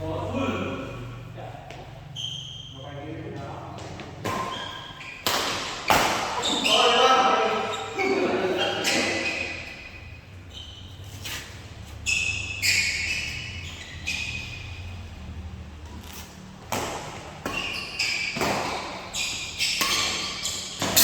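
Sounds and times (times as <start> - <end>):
shoes squeaking on court floor: 1.6 - 21.0
rackets striking shuttlecock: 19.7 - 21.0.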